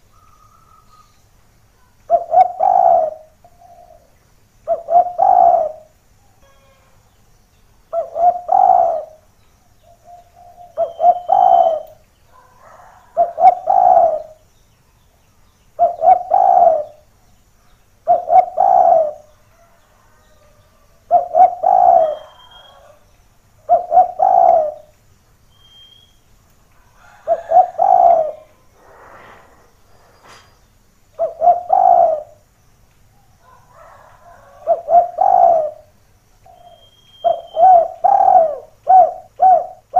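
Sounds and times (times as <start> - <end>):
dove cooing: 2.1 - 6.9, 7.9 - 9.3, 10.0 - 14.4, 15.8 - 17.0, 18.1 - 19.3, 21.1 - 23.0, 23.6 - 24.9, 27.0 - 30.5, 31.2 - 32.4, 33.5 - 35.9, 36.6 - 39.9.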